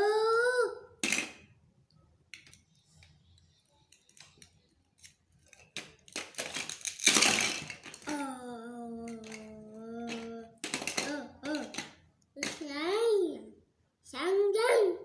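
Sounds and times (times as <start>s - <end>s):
plastic toy clicking and knocking: 1.0s - 1.5s, 2.3s - 3.1s, 3.8s - 8.3s, 9.0s - 12.7s.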